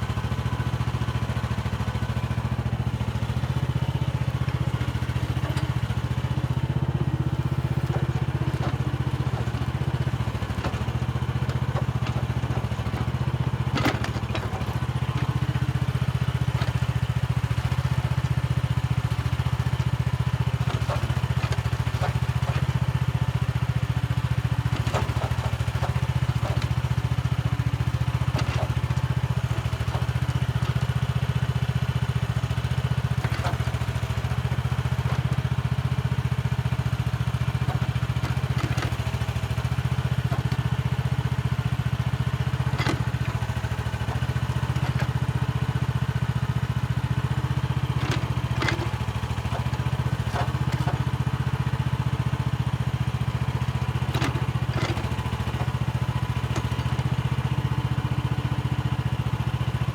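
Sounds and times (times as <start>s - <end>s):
mini excavator engine running: 0.0s - 59.9s
bucket scraping soil: 7.2s - 17.1s, 36.9s - 52.2s.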